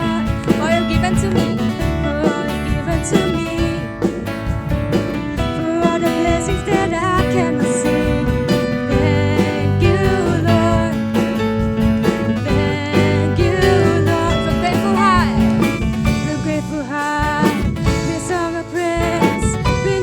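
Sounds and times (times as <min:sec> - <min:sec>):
guitar-led music: 0:00.0 - 0:20.0
person singing worship song: 0:12.4 - 0:15.5.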